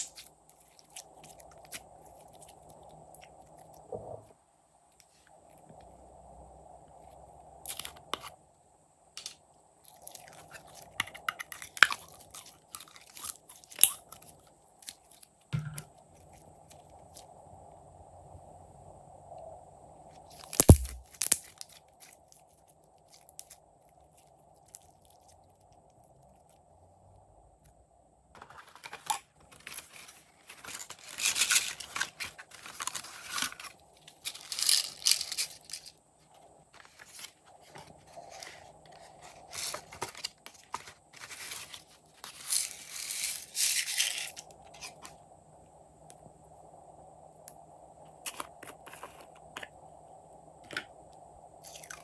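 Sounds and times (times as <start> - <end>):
hands crinkling and tearing material: 20.4 - 25.4
sharp knock: 20.6 - 21.0.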